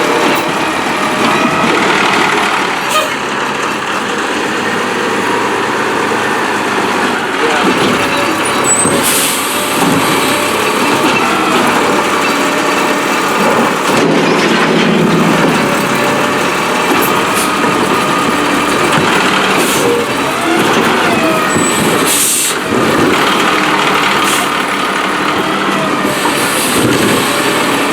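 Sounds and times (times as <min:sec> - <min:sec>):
diesel engine running: 0:00.0 - 0:27.9
garbage truck machinery: 0:00.0 - 0:27.9.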